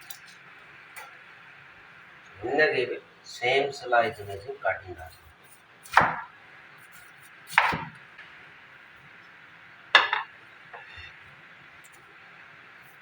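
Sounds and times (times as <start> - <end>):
knife chopping onion on board: 5.8 - 6.3, 7.5 - 8.0.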